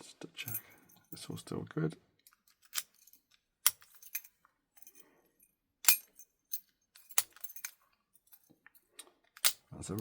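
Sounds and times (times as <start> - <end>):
keys clinking: 2.2 - 5.1, 5.8 - 10.0.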